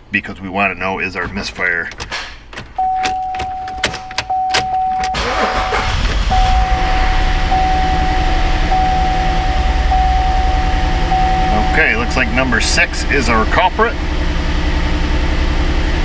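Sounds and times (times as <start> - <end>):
car engine running: 1.1 - 16.0
starter clicks: 1.2 - 6.2
high warning chime: 2.0 - 13.5.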